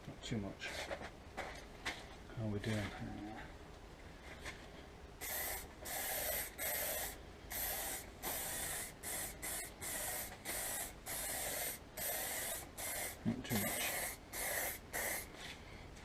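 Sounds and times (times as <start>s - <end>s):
aerosol spray can hissing: 5.2s - 15.3s.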